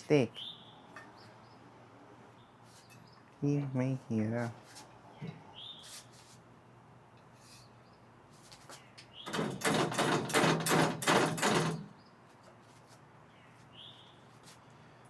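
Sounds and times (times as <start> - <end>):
machine parts knocking and scraping: 9.3 - 11.9.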